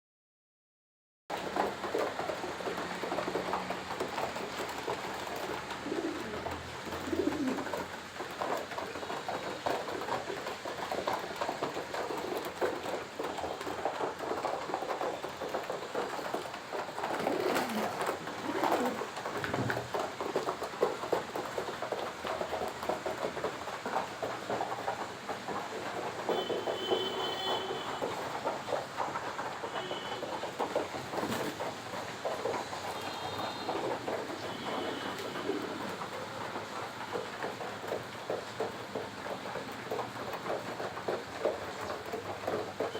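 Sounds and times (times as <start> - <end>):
pigeons cooing: 4.0 - 13.4, 14.3 - 22.0, 30.5 - 39.4.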